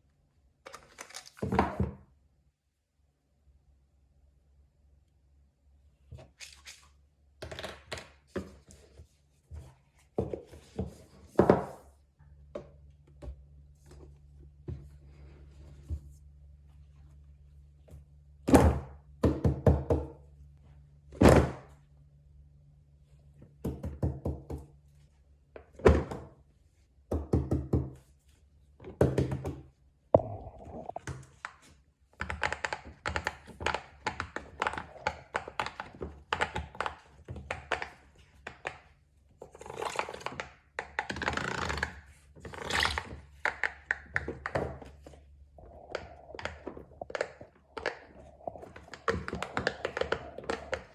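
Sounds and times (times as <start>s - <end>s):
fidget toys clicking and tapping: 32.2s - 38.7s, 46.2s - 50.9s.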